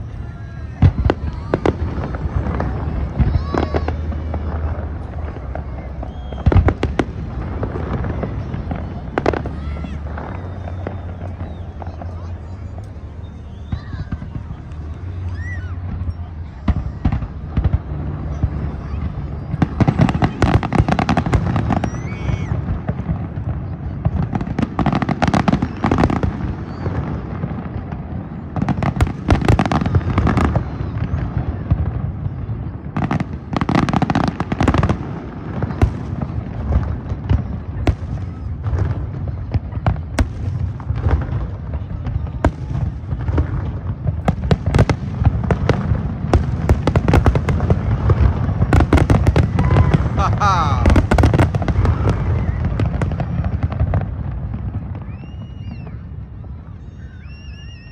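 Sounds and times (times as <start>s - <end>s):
fireworks bangs and crackles: 0.0s - 57.9s.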